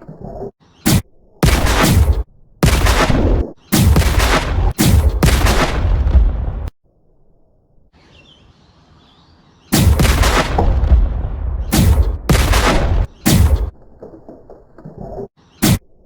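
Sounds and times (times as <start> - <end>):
gunfire bursts: 0.9 - 6.7, 9.7 - 13.8.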